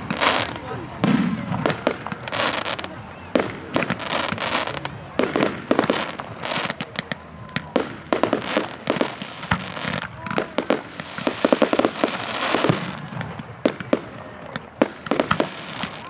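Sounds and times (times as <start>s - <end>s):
firework bangs: 0.0s - 16.0s
crackling and hissing bursts: 7.8s - 16.0s
faint firework whistles: 14.8s - 16.0s.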